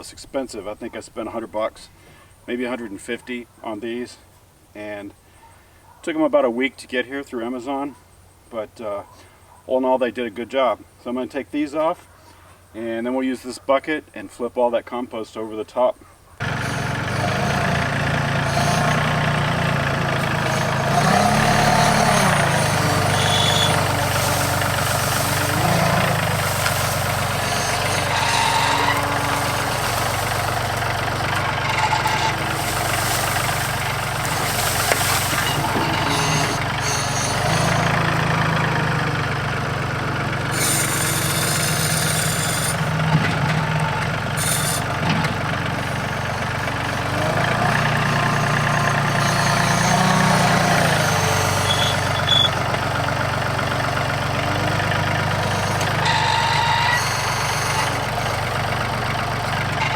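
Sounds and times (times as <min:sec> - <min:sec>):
tractor diesel engine running: 0:16.4 - 0:59.9
short hiss: 0:19.6 - 0:38.2.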